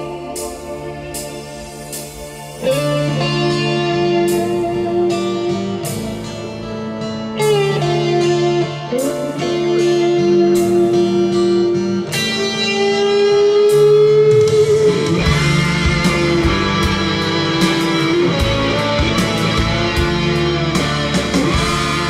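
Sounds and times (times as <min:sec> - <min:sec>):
bass line: 0:00.0 - 0:22.0
guitar melody with bends: 0:00.0 - 0:22.0
low hits: 0:14.4 - 0:22.0.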